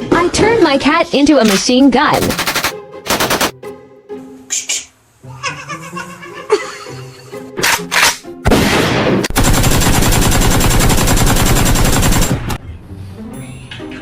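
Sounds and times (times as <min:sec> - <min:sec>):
machine gun firing: 0:01.5 - 0:03.6, 0:08.7 - 0:12.6.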